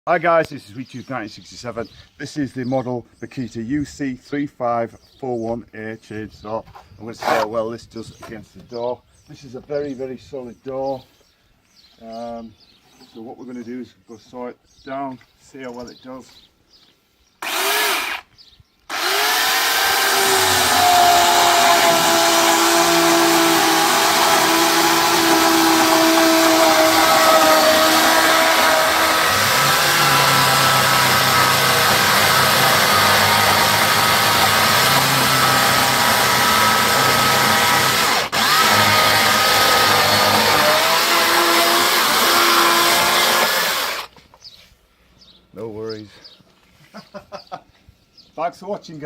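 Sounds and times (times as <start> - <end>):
electric chainsaw cutting wood: 17.4 - 18.3, 18.9 - 44.2.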